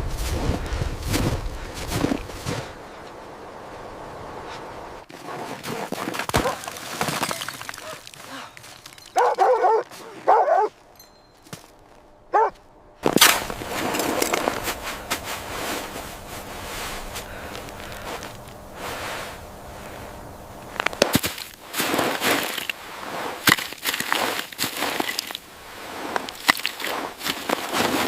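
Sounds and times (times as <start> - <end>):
footsteps: 0.0 - 28.0
rustling: 0.0 - 28.0
dog barking: 6.4 - 6.6, 9.2 - 10.8, 12.3 - 12.6.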